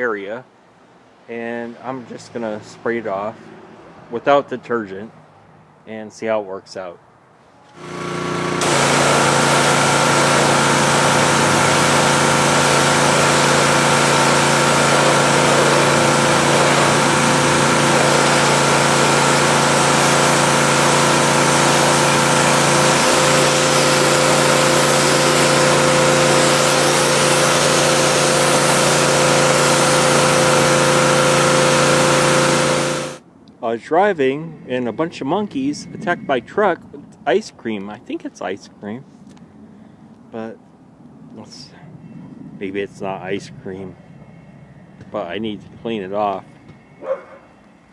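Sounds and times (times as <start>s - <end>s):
pressure washer engine running: 7.7s - 33.2s
high-pressure water jet hissing: 7.8s - 33.2s.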